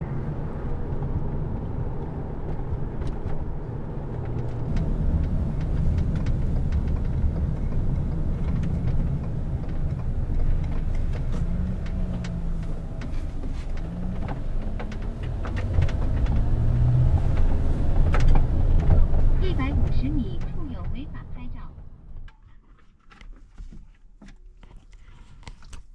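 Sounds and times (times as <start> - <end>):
vehicle engine rumbling: 0.2 - 22.3
light clicks and taps: 4.2 - 21.9.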